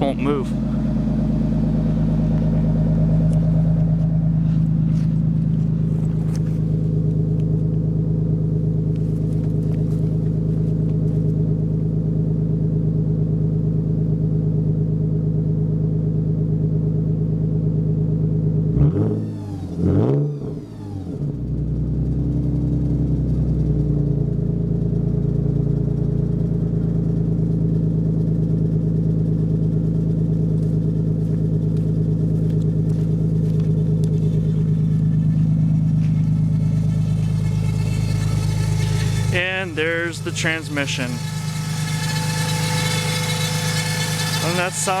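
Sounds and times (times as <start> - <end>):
car engine idling: 0.0 - 19.7, 20.8 - 45.0.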